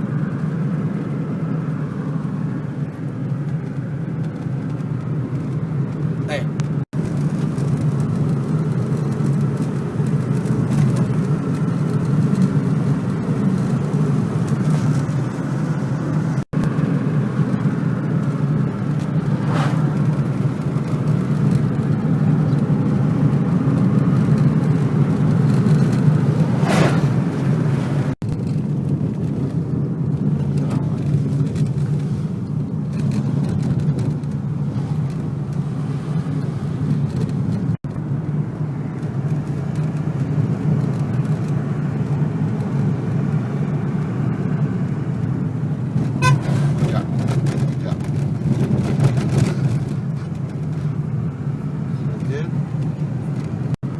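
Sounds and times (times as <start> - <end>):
car engine and tyre rumble: 0.0 - 53.9
brief whooshes: 19.2 - 20.4, 26.4 - 28.2.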